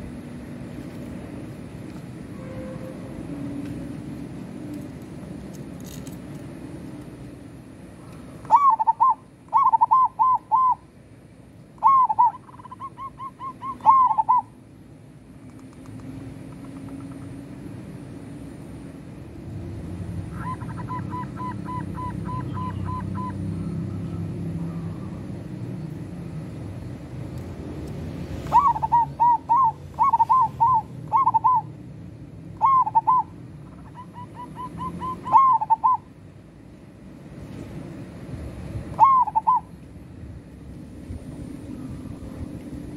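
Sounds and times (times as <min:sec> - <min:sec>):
dove cooing: 0:08.5 - 0:10.8, 0:11.8 - 0:14.5, 0:20.3 - 0:23.9, 0:28.5 - 0:31.7, 0:32.6 - 0:36.1, 0:39.0 - 0:39.7.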